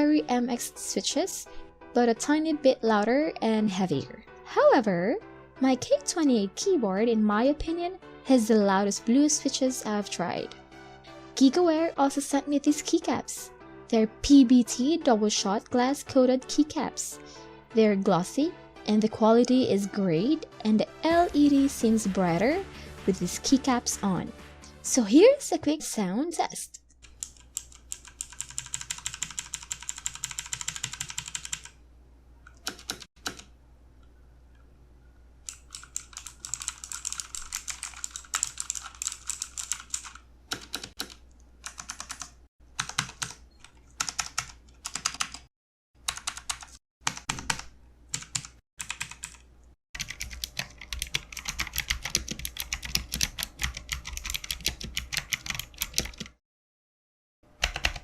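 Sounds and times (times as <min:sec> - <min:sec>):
mechanical keyboard typing: 0:27.0 - 0:31.8, 0:32.5 - 0:33.5, 0:35.5 - 0:45.5, 0:46.1 - 0:49.4, 0:50.0 - 0:56.4, 0:57.6 - 0:58.0.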